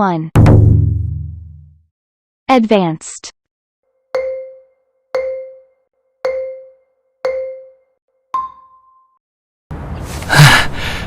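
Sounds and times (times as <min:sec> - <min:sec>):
marimba-like countdown tones: 0:04.1 - 0:09.1.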